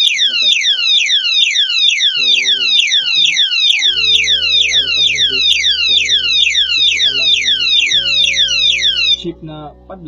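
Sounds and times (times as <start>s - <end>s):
alarm siren with rapid falling sweeps: 0.0s - 9.2s.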